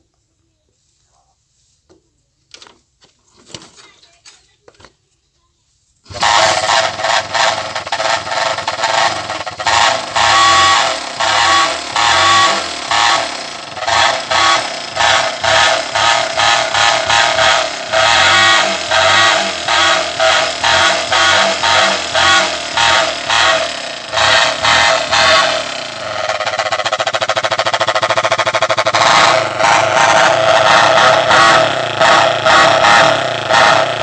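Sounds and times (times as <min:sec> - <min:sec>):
motorcycle engine running: 0:06.1 - 0:34.0.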